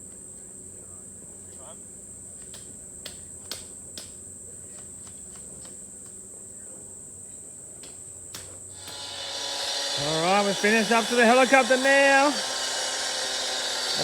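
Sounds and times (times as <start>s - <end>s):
insect chorus trilling: 8.4s - 14.0s.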